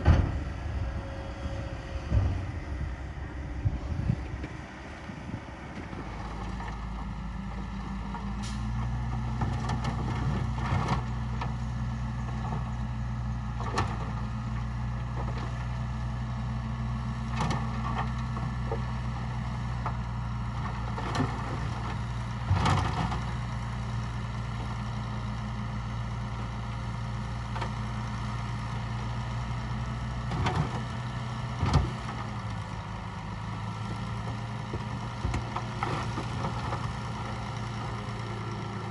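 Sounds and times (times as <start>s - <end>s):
heavy diesel engine running: 0.0s - 38.9s.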